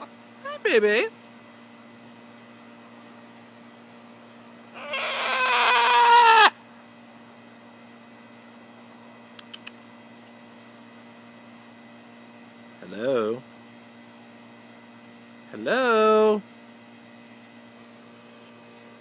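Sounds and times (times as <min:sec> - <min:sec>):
macaw calling: 0:04.7 - 0:06.6
short faint clicks: 0:09.3 - 0:09.8.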